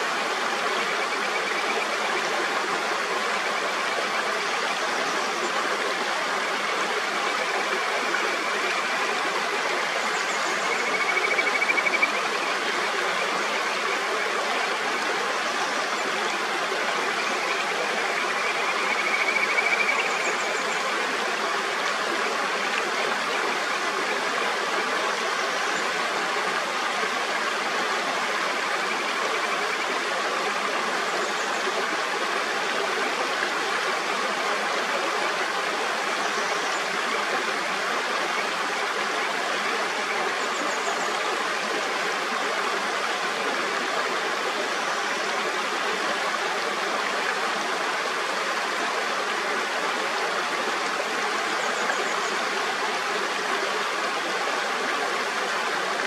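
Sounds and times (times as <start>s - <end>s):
mountain stream flowing: 0.0s - 56.0s.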